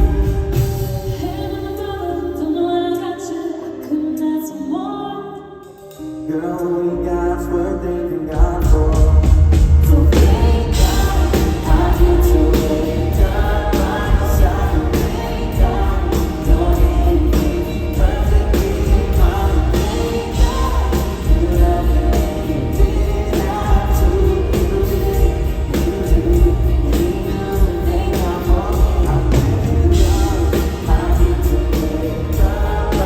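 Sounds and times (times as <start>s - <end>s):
live band playing country-pop: 0.0s - 4.2s, 5.7s - 33.0s
person singing: 0.0s - 33.0s
drum beat: 8.4s - 33.0s
heavy bass: 8.4s - 33.0s.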